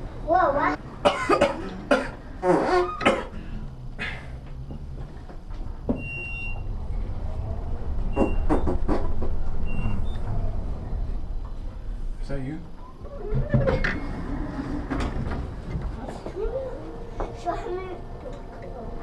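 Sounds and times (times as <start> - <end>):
steady low hum: 0.0 - 19.0
people's voices: 15.8 - 19.0.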